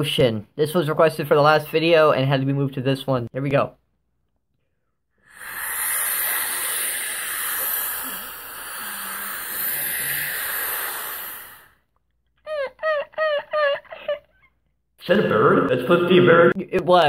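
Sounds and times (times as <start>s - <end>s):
high vocal chirps: 5.2s - 11.8s
man imitating waves with mouth: 5.3s - 11.8s.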